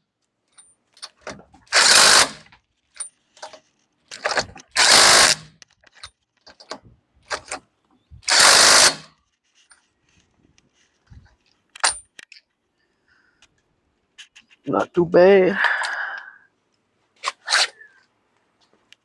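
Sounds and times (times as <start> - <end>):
impact wrench bursts: 1.7 - 2.5, 4.7 - 5.6, 8.2 - 9.1.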